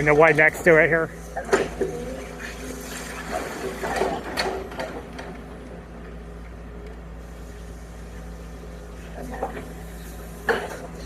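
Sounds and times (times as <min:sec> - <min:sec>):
distant excavator diesel engine: 0:00.0 - 0:11.0
knocks and clatter: 0:02.9 - 0:05.5.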